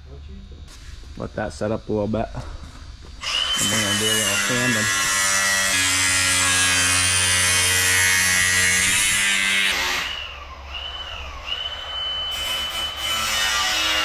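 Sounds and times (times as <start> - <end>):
high wavering whine: 0.0 - 7.7, 8.3 - 14.0
electric sander on metal: 3.2 - 10.2, 12.3 - 14.0.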